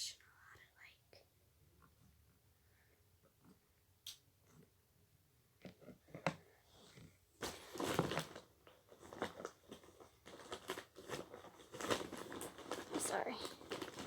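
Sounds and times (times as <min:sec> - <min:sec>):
rustling: 0:05.6 - 0:14.0
handling clicks and sticky crackles: 0:09.0 - 0:14.0.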